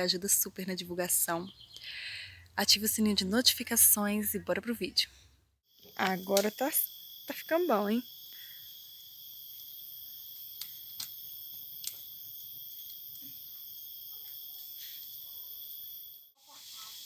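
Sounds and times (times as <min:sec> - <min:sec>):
insects chorus: 0:05.7 - 0:17.0.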